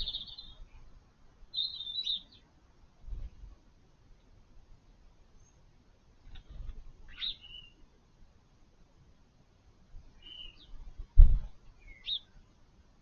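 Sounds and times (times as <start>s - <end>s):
birds chirping: 0.0s - 0.9s, 1.5s - 2.5s, 7.0s - 7.8s, 10.2s - 10.9s, 11.6s - 12.4s
dull low thump: 11.2s - 11.6s.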